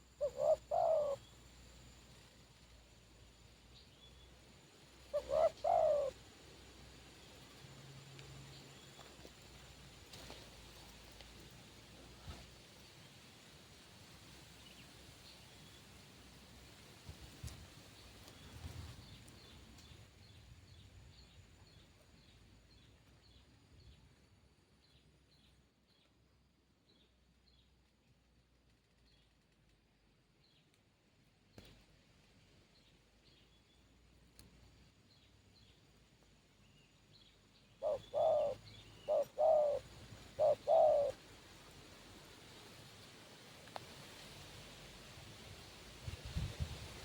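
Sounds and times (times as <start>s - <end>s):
dove cooing: 0.0s - 1.2s, 5.1s - 6.2s, 37.8s - 41.2s
soft hiss: 0.0s - 24.7s, 27.1s - 47.0s
small birds chirping: 31.4s - 42.8s
small bird chirping: 36.6s - 41.2s.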